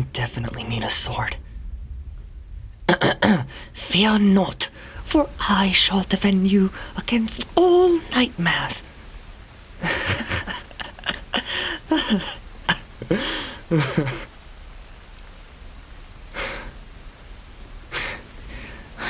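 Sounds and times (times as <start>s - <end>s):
steady rain: 0.0s - 19.0s
short breaths: 17.9s - 19.0s
soft breathy voice sounds: 17.9s - 19.0s.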